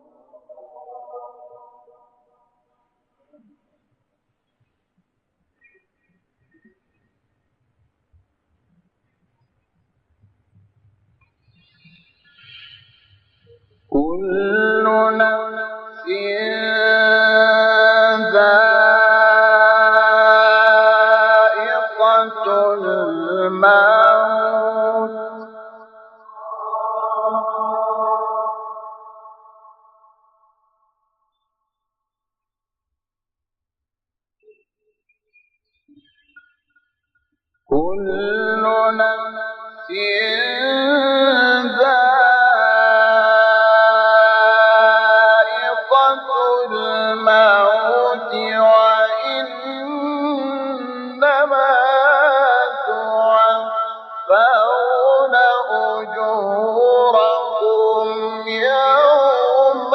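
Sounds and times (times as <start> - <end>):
man reciting melodic chant: 13.9 - 25.5, 37.7 - 59.9.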